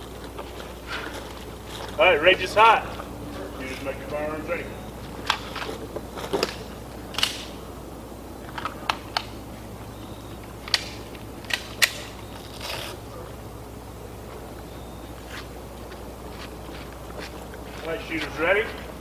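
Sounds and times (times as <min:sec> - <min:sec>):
low hum: 0:00.0 - 0:19.0
magazines seating clicks: 0:05.2 - 0:07.6
pistol slides racked: 0:06.4 - 0:07.6.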